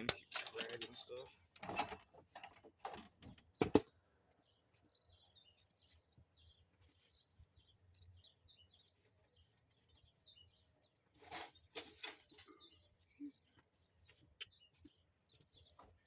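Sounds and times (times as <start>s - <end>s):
faint high bird chirps: 4.3s - 16.0s.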